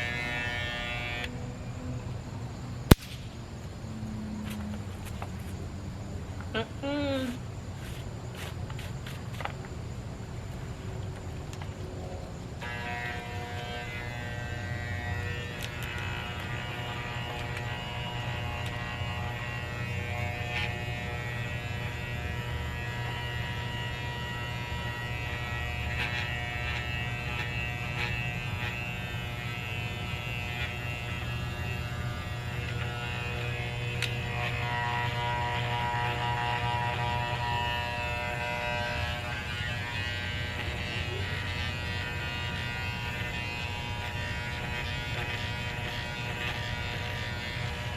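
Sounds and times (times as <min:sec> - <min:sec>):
electric clippers buzzing: 0:00.0 - 0:02.0, 0:12.4 - 0:47.9.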